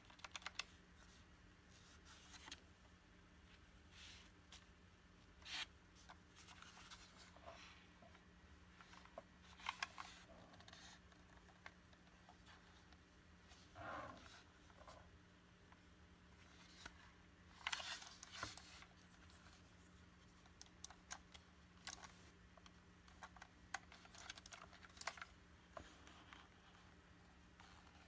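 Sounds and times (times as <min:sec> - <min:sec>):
faint low hum: 0:00.0 - 0:28.0.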